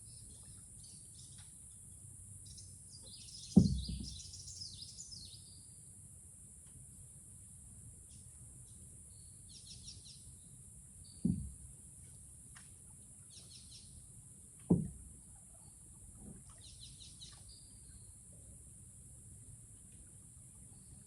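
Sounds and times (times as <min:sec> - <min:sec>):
dull knocks on canoe: 0:03.5 - 0:04.4, 0:11.2 - 0:11.7, 0:14.6 - 0:15.2.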